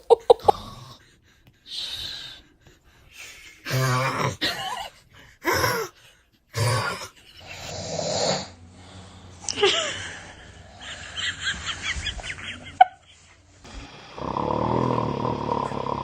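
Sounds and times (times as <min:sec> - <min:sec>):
loud snoring: 0:06.6 - 0:09.0, 0:13.7 - 0:16.0.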